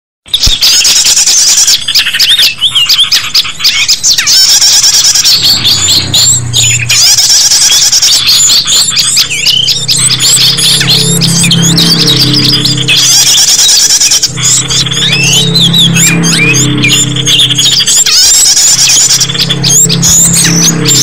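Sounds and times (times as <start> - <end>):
many small birds chirping: 0.3 - 21.0
low hum: 4.6 - 21.0.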